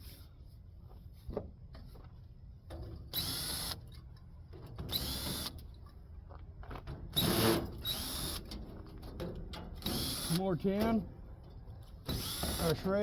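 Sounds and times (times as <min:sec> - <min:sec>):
power drill bursts: 0:03.2 - 0:03.8, 0:04.9 - 0:05.6, 0:07.2 - 0:08.4, 0:09.9 - 0:10.4, 0:12.1 - 0:12.9.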